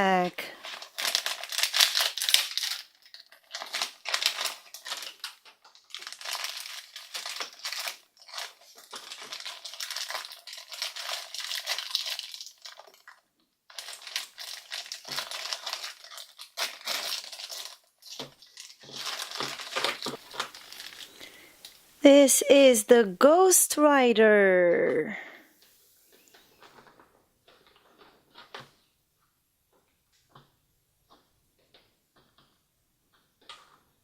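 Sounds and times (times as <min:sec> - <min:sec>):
toy wrapper tearing and crinkling: 0:00.1 - 0:22.0.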